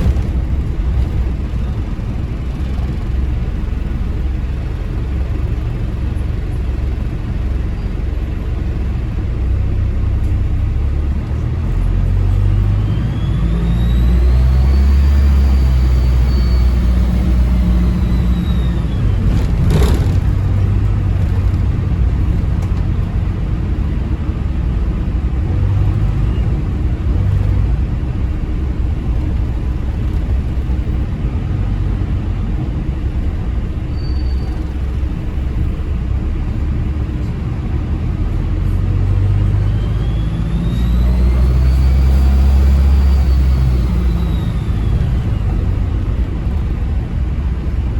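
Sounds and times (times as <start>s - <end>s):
diesel bus engine pulling hard: 0.0s - 47.9s
turbocharger whistle: 12.6s - 20.1s, 39.6s - 45.7s.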